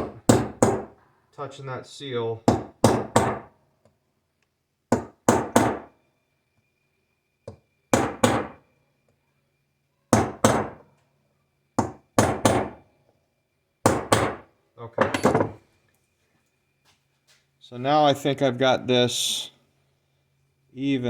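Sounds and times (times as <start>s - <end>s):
hammer tapping metal punch: 15.0s - 15.6s.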